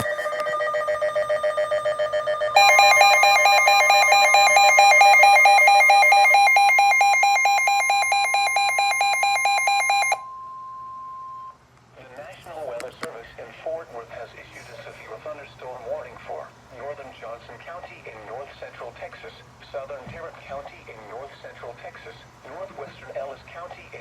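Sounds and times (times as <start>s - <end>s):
rapid electronic alert beeping: 0.0s - 10.2s
faint steady tone: 0.0s - 11.6s.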